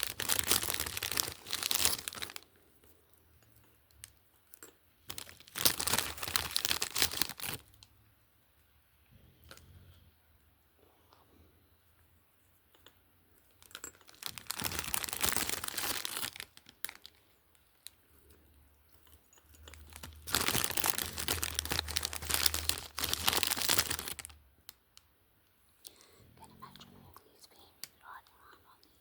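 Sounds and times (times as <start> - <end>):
packaging crinkling and tearing: 0.0 - 2.4, 5.0 - 7.9, 13.6 - 18.0, 19.6 - 24.4.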